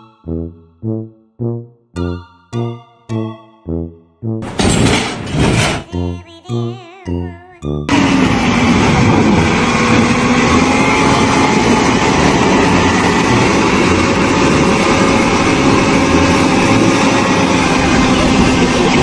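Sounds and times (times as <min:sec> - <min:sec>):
machine engine running: 0:04.4 - 0:05.9, 0:07.9 - 0:19.0.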